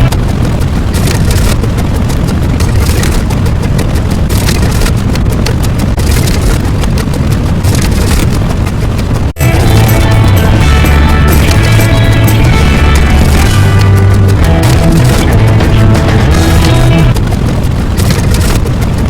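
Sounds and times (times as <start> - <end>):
loud rushing rumble: 0.0 - 19.0
music: 9.4 - 17.2.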